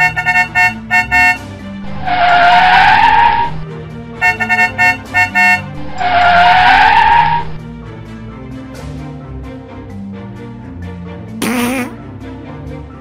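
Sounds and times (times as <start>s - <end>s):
short horn toots: 0.0s - 1.5s, 4.2s - 5.8s
light background music: 0.0s - 13.0s
cartoon tyre screech: 1.2s - 3.6s, 4.2s - 7.6s.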